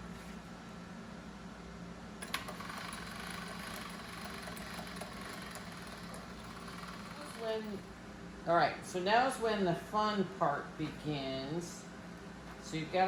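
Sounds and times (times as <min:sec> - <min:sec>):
pasta roller mechanical hum: 0:02.2 - 0:08.2.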